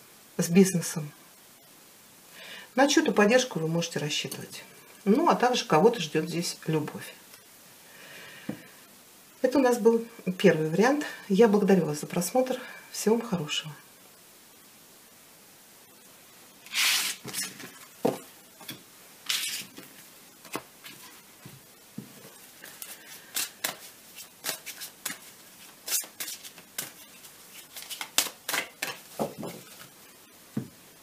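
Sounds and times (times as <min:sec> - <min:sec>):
cards sliding swishes: 0:16.7 - 0:17.8, 0:22.6 - 0:29.0.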